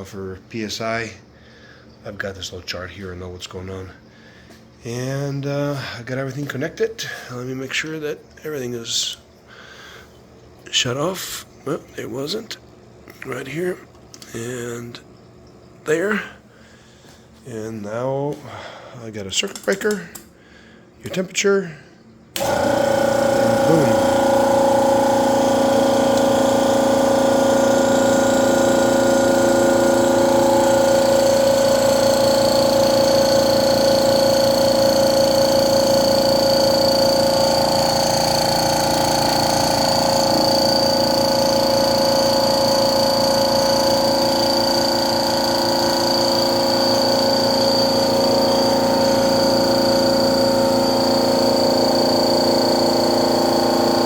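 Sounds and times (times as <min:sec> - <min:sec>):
air compressor humming and whining: 0:15.8 - 0:19.2, 0:21.7 - 0:54.0.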